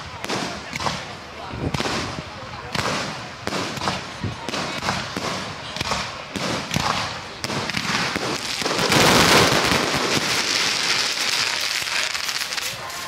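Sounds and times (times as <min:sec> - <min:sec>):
fireworks bangs: 0:00.0 - 0:13.0
fireworks crackling: 0:00.0 - 0:13.0.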